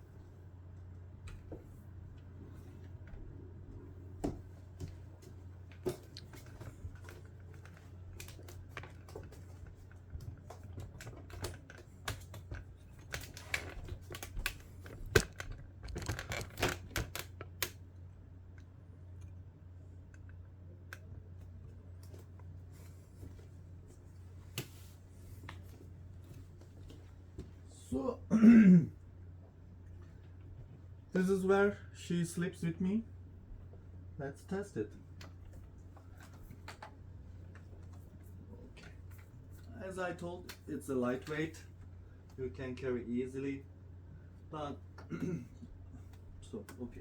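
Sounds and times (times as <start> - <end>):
low steady hum: 0.0 - 47.0
plastic parts clicking and knocking: 5.7 - 17.8.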